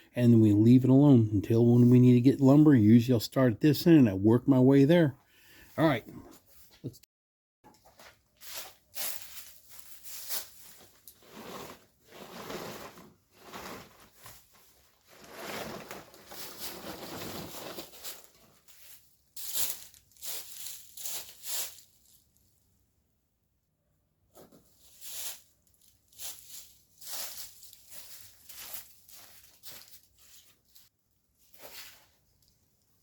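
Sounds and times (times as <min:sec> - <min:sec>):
rustling and crinkling: 0:07.7 - 0:22.5, 0:24.3 - 0:33.0.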